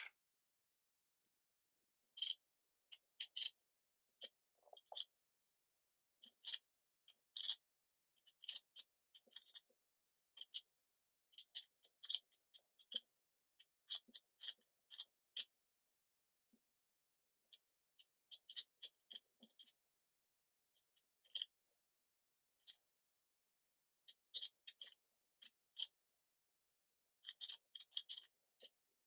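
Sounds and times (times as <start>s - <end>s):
plastic puzzle cube layers clicking: 8.2s - 9.7s, 21.2s - 21.5s, 24.1s - 26.0s, 27.2s - 28.8s.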